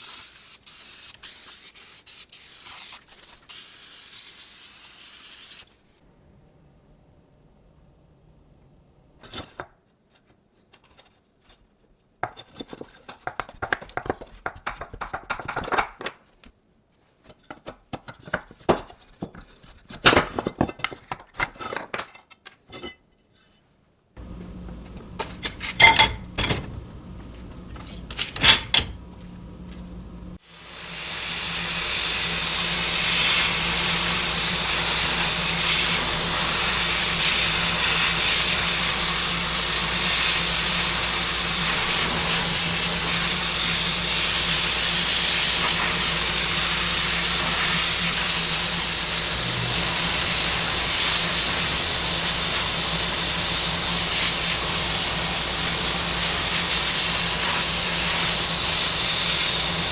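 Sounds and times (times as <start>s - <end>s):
loud steady air hiss: 24.2s - 59.9s
motor humming: 24.2s - 59.9s
small metal parts clinking: 24.9s - 26.8s.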